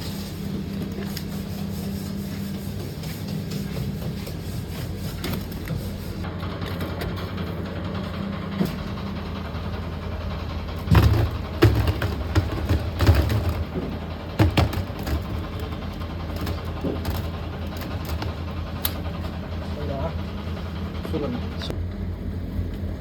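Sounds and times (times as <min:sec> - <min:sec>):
low machine hum: 0:00.0 - 0:23.0
sharp knocks and clatters: 0:10.8 - 0:19.4.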